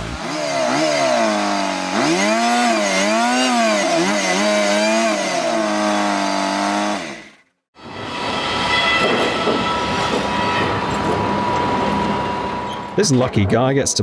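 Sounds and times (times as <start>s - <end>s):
chainsaw cutting wood: 0.0s - 7.5s.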